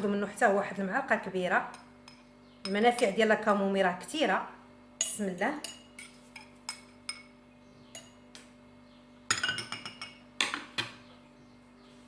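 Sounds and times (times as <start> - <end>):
metal spoon clinking against glass: 5.0 - 7.3, 8.0 - 8.2, 9.3 - 10.2.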